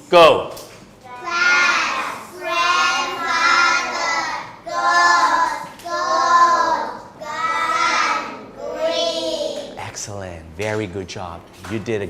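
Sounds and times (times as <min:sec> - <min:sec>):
children chanting words in unison: 0:01.0 - 0:09.8.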